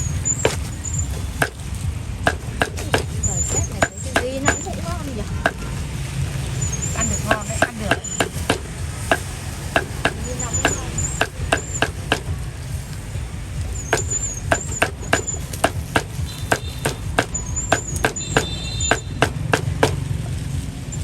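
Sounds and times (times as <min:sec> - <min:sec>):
traffic rumble: 0:00.0 - 0:21.0
cleaver chopping on a block: 0:00.4 - 0:01.6, 0:02.3 - 0:04.8, 0:07.2 - 0:12.4, 0:13.9 - 0:20.0.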